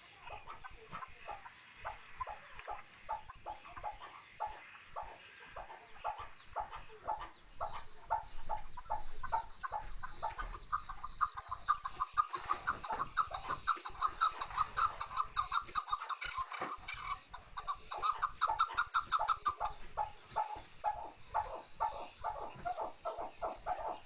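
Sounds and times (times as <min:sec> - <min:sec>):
partridge clucking calls: 0:00.0 - 0:24.0.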